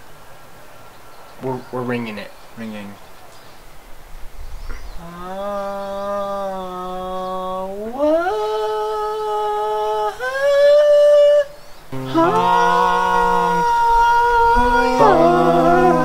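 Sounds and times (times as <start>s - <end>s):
men humming held notes: 5.0s - 16.0s
voices humming a chord: 11.9s - 16.0s.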